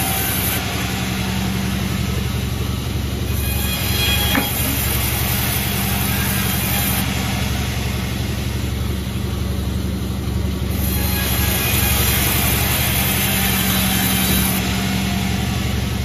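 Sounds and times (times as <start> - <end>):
brief rising squeal: 3.3 - 5.0
engine idling: 4.0 - 16.0.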